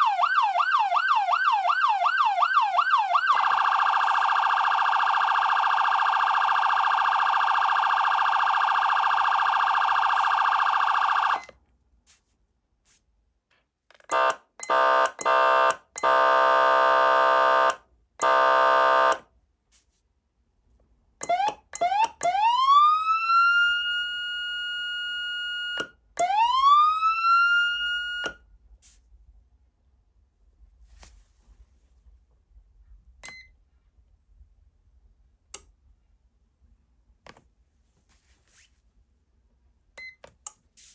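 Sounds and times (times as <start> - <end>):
electronic siren: 0.0 - 11.5, 14.1 - 19.2, 21.2 - 28.4
electronic air horn: 14.1 - 19.2.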